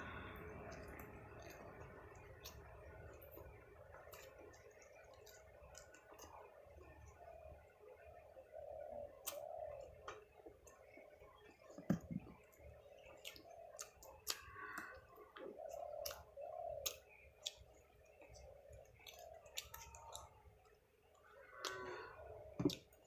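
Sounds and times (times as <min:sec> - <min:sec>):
soft chewing: 0:00.0 - 0:23.0
mouth clicks: 0:21.6 - 0:22.9.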